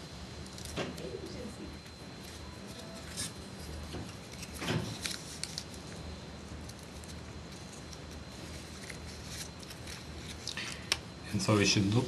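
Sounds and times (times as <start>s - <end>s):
paper rustling and crinkling: 1.8s - 10.9s.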